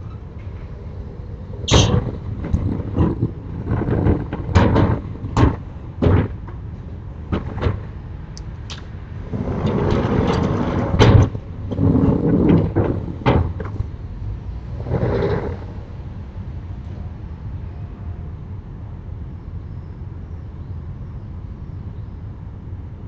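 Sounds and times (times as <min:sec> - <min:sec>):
shutter rumbling slide: 0:08.5 - 0:13.9.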